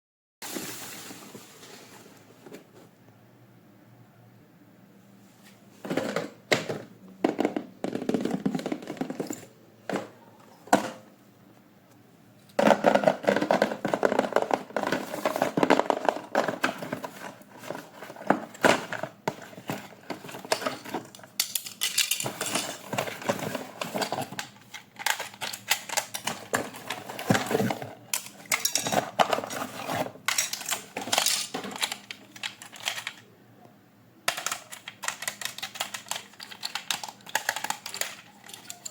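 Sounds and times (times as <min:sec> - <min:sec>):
packaging clicks and knocks: 0:12.6 - 0:33.2, 0:34.3 - 0:38.9.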